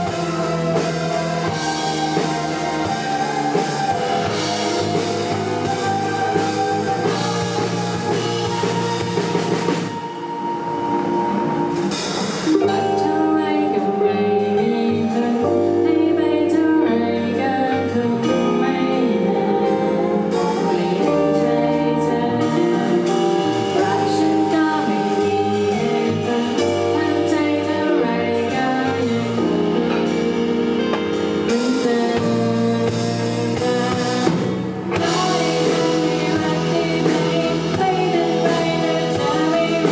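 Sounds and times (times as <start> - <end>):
synth-led electronic pop song: 0.0 - 39.9
person singing: 12.5 - 39.9.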